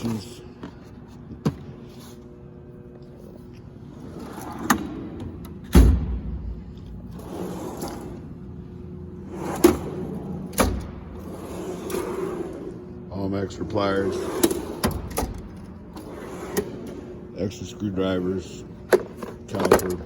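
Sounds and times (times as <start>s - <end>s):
metal drawers sliding and shutting: 3.9s - 6.3s, 7.1s - 8.4s, 9.2s - 12.8s, 13.7s - 17.3s, 18.9s - 20.0s.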